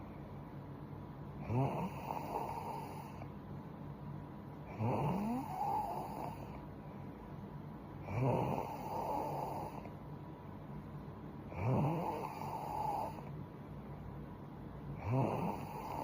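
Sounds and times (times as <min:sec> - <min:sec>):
girl snoring: 0:01.5 - 0:03.2, 0:04.7 - 0:06.6, 0:08.1 - 0:09.9, 0:11.5 - 0:13.3, 0:15.0 - 0:16.0.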